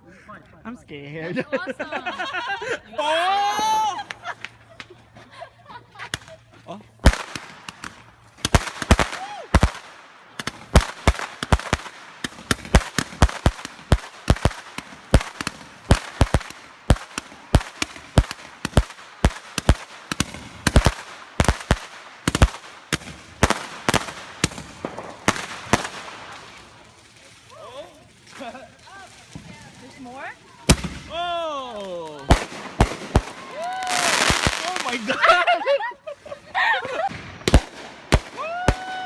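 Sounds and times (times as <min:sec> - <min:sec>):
fireworks crackling: 0:01.7 - 0:39.0
fireworks bangs and pops: 0:06.0 - 0:31.2, 0:31.8 - 0:35.4, 0:36.8 - 0:39.0.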